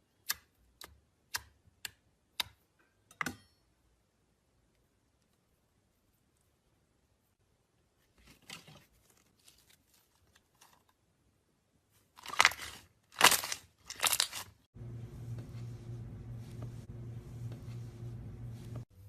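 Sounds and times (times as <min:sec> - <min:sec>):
slime crackling: 0:12.2 - 0:14.6
low hum: 0:14.8 - 0:19.0.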